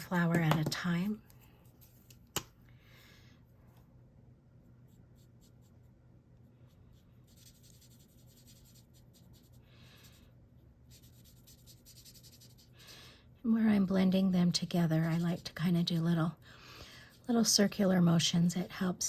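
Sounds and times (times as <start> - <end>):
low steady hum: 0.0 - 19.0
marker scratching on card: 6.9 - 10.2, 10.9 - 12.8.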